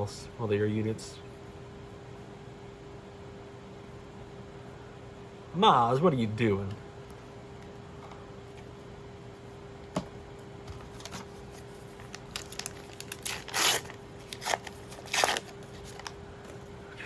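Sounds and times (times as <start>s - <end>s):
foil wrapper crinkling: 10.9s - 16.2s
foil pack ripping: 12.0s - 16.2s.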